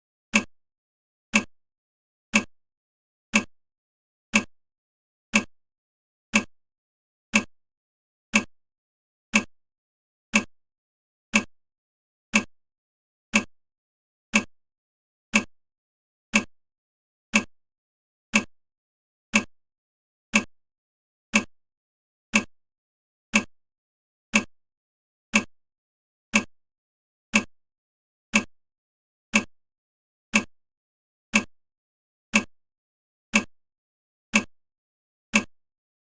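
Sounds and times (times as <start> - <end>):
clock ticking: 0.3 - 0.5, 1.3 - 1.5, 2.3 - 2.5, 3.3 - 3.5, 4.3 - 4.5, 5.3 - 5.5, 6.3 - 6.5, 7.3 - 7.5, 8.3 - 8.5, 9.3 - 9.5, 10.3 - 10.5, 11.3 - 11.5, 12.3 - 12.5, 13.3 - 13.5, 14.3 - 14.5, 15.3 - 15.5, 16.3 - 16.5, 17.3 - 17.5, 18.3 - 18.5, 19.3 - 19.5, 20.3 - 20.5, 21.3 - 21.5, 22.3 - 22.5, 23.3 - 23.5, 24.3 - 24.5, 25.3 - 25.5, 26.3 - 26.5, 27.3 - 27.5, 28.3 - 28.5, 29.3 - 29.5, 30.3 - 30.5, 31.3 - 31.5, 32.3 - 32.5, 33.3 - 33.5, 34.3 - 34.5, 35.3 - 35.6.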